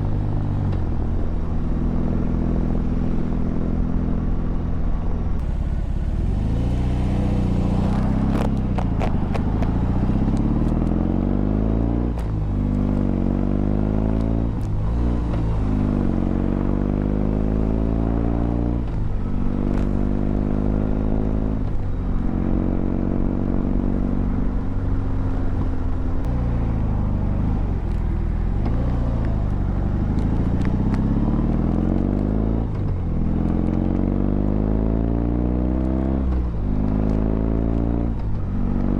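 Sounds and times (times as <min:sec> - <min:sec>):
motorcycle engine shifting gears: 0:05.4 - 0:21.8, 0:26.2 - 0:38.9.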